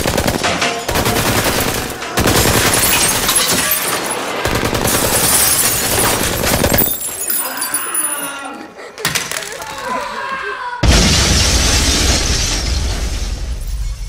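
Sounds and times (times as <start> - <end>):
rapid gunfire: 0.0 - 3.3, 4.3 - 6.8
glass shattering: 2.0 - 8.4.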